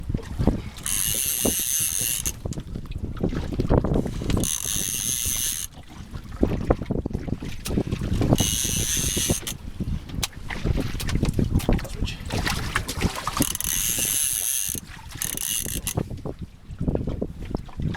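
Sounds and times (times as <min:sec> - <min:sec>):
boat noise: 0:00.0 - 0:17.6
low wind: 0:00.0 - 0:17.9
fishing reel whining: 0:00.7 - 0:02.6, 0:04.0 - 0:05.8, 0:08.2 - 0:09.6, 0:13.4 - 0:16.0.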